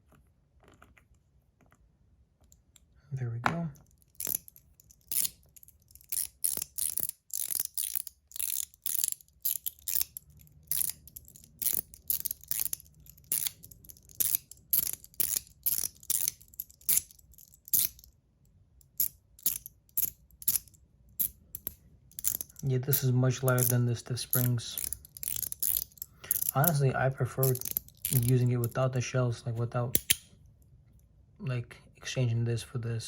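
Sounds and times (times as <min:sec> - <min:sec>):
fidget slider metallic clicks: 0:29.9 - 0:30.3.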